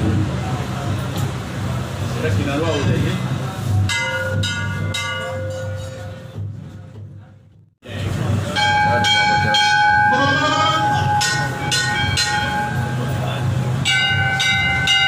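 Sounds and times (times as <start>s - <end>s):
temple bells ringing: 3.8s - 6.6s, 8.2s - 15.0s
long steady tone: 8.4s - 15.0s.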